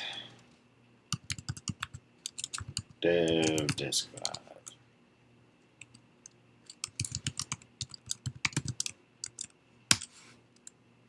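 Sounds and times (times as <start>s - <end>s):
typing on laptop keyboard: 1.2s - 4.4s, 6.7s - 10.7s.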